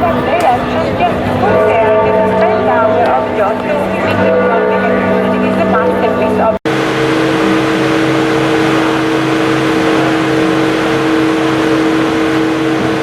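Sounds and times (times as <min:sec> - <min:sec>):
road noise: 0:00.0 - 0:13.0.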